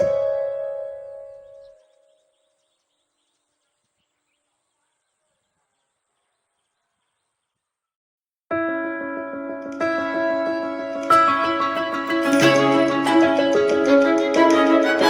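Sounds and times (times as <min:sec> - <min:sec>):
faint bird chirps: 0:01.1 - 0:07.9.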